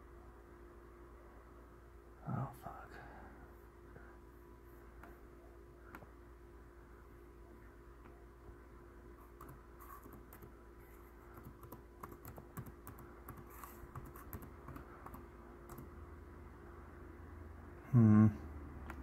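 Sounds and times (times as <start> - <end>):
low electrical hum: 0.0 - 19.0
computer keyboard typing: 9.4 - 10.5, 11.3 - 15.9.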